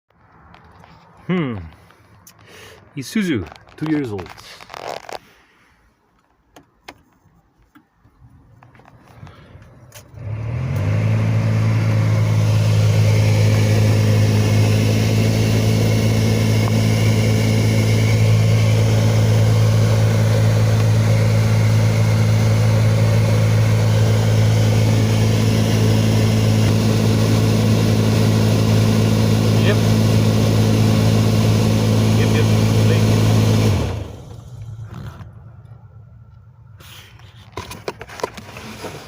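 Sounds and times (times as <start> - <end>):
blower motor humming: 9.3 - 35.4.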